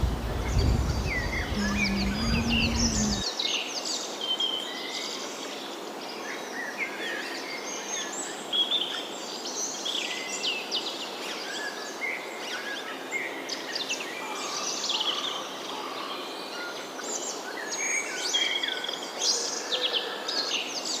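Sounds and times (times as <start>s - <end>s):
birds singing and chirping: 0.0s - 3.3s
steady background hiss: 0.0s - 18.0s.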